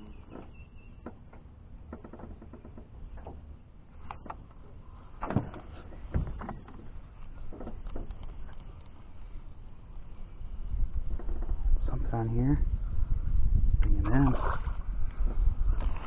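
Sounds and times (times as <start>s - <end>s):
gear knocking in a boat: 0.0s - 3.5s
low steady rumble: 0.0s - 16.0s.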